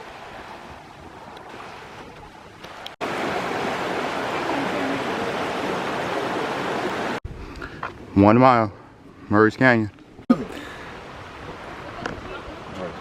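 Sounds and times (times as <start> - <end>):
stream water rushing: 0.0 - 7.2, 10.3 - 13.0.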